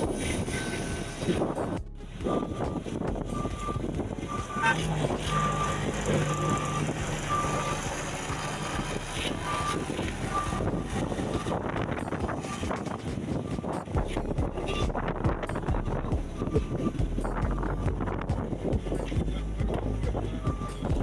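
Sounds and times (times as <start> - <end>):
diesel engine hum: 0.0 - 21.0
reversing alarm beeping: 0.5 - 12.6, 15.5 - 18.0.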